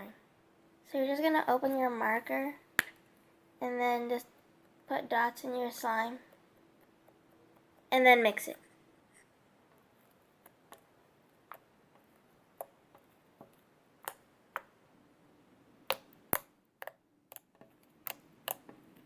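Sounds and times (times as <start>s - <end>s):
sticky slime clicks and pops: 15.9s - 18.7s.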